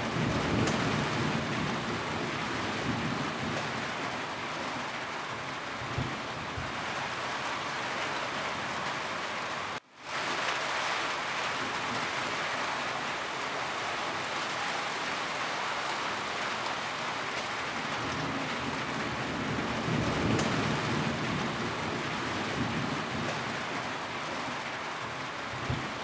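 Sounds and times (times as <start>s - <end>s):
rain falling on a roof: 0.0s - 26.0s.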